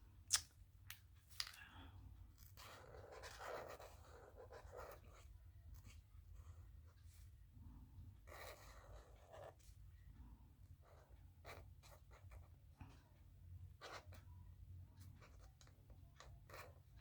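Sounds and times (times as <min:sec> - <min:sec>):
writing tool scratching: 0:02.6 - 0:05.2, 0:08.3 - 0:09.7.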